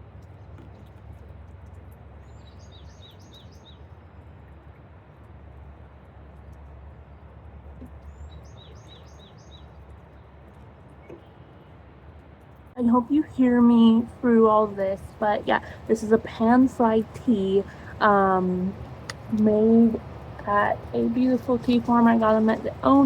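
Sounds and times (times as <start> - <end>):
bird singing: 2.2 - 3.9, 7.9 - 10.3
heavy rain: 12.9 - 23.0.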